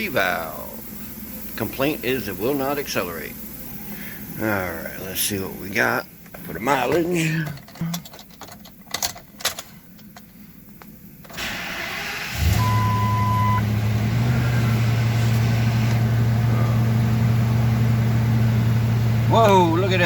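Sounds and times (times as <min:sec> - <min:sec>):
truck engine starting and idling: 0:11.2 - 0:20.0
dashboard chime beeping: 0:12.6 - 0:13.6.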